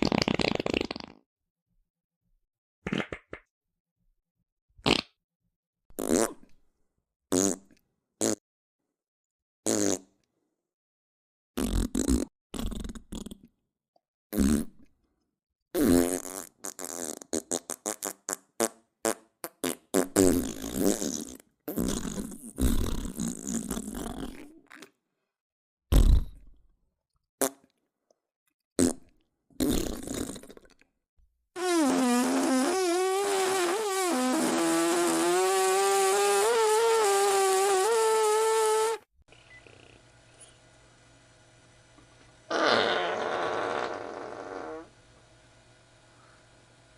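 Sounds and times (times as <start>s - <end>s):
fart sound effects: 0.0s - 1.2s, 4.8s - 5.1s, 9.7s - 10.1s, 11.6s - 13.4s, 15.8s - 24.5s, 25.9s - 26.4s, 28.8s - 29.0s, 29.6s - 30.6s, 31.6s - 39.0s, 42.5s - 44.9s.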